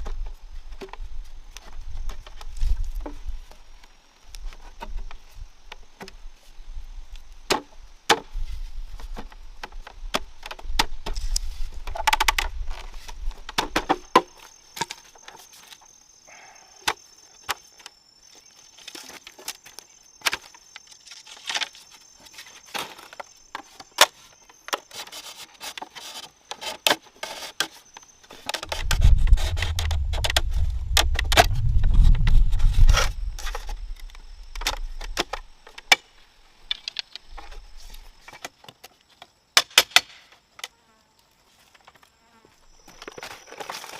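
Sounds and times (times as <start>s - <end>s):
high insect drone: 0.4s - 39.5s
low rumble: 28.6s - 34.6s.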